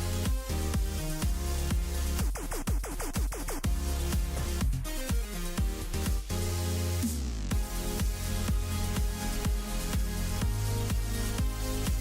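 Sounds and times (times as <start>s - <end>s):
background music with steady beat: 0.0s - 12.0s.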